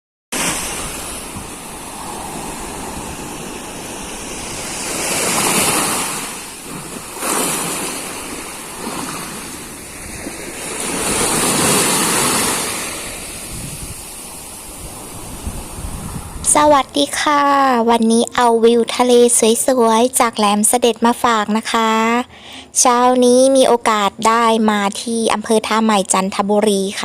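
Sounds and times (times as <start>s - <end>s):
waves breaking on beach: 0.3s - 17.8s.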